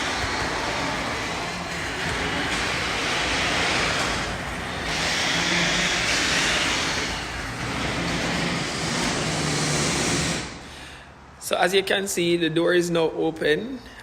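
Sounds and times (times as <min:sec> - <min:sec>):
garage door opening: 0:00.0 - 0:10.9.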